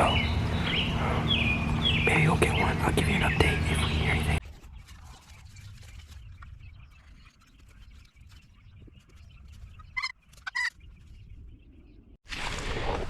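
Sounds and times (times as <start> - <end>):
low steady rumble: 0.0 - 4.4.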